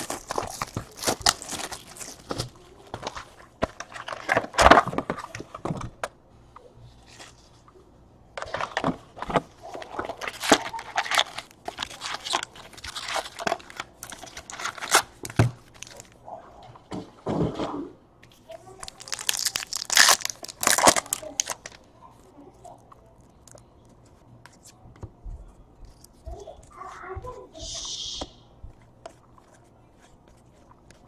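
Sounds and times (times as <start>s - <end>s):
card pack wrappers crinkling: 0.0s - 5.5s, 8.4s - 16.2s, 18.7s - 21.9s.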